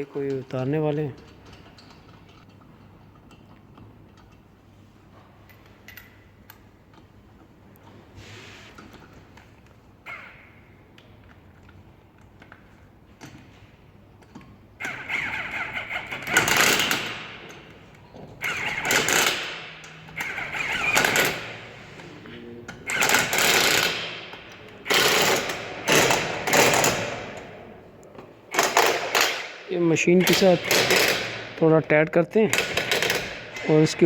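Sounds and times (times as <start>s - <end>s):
pneumatic impact wrench rattling: 14.8s - 22.1s, 22.8s - 27.6s, 28.5s - 31.6s, 32.5s - 34.0s.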